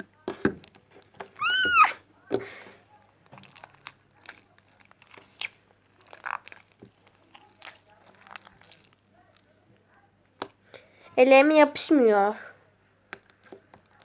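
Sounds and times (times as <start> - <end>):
slime squishing and crackling: 3.0 - 9.6, 13.2 - 14.0.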